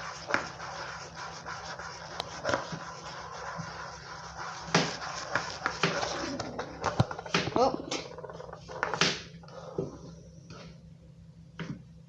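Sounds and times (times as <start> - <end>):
spoon stirring thick slime: 0.0 - 10.1.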